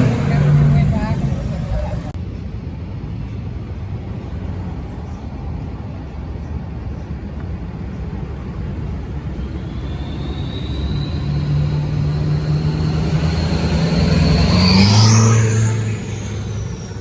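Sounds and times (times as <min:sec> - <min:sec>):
diesel engine accelerating: 0:00.0 - 0:02.2, 0:08.0 - 0:17.0
turbo whistle: 0:09.0 - 0:17.0.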